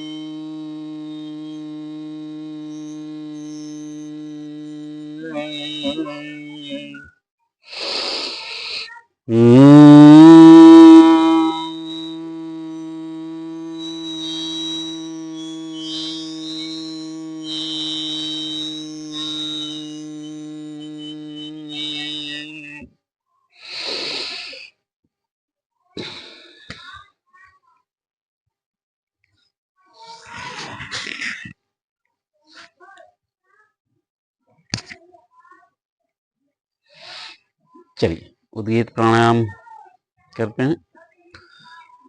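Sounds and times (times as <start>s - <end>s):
long low nasal hum: 0.0s - 7.1s, 7.7s - 22.9s
deep inhale: 7.7s - 10.2s.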